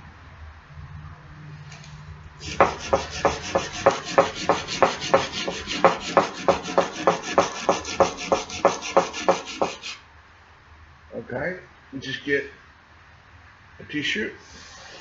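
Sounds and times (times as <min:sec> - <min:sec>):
sandpaper rubbing on steel: 0:02.4 - 0:10.0.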